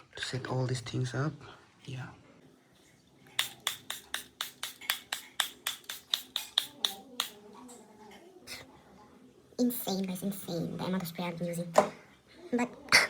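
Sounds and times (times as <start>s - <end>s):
spray bottle puffs: 3.4s - 7.4s.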